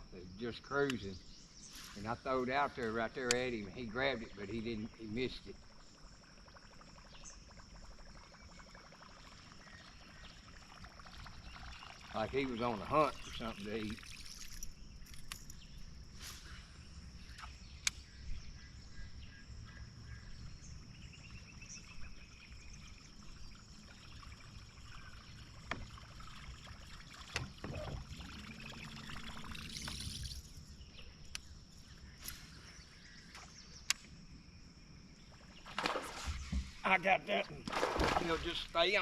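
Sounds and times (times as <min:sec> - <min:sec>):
water lapping against boat hull: 0:22.9 - 0:30.2, 0:35.4 - 0:39.0.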